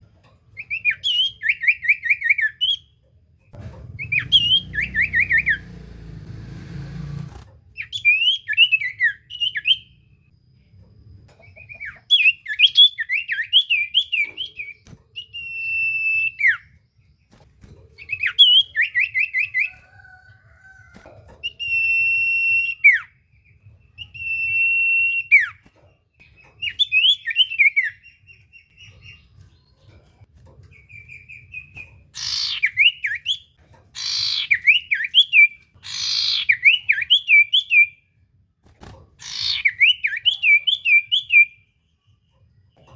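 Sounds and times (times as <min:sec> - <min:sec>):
bird singing trills and whistles: 0:00.6 - 0:02.9, 0:04.0 - 0:05.7, 0:07.8 - 0:10.0, 0:11.4 - 0:16.8, 0:18.0 - 0:19.8, 0:21.4 - 0:23.2, 0:24.0 - 0:25.6, 0:26.4 - 0:29.3, 0:30.8 - 0:38.0, 0:39.2 - 0:41.7
low rumble: 0:03.6 - 0:07.4.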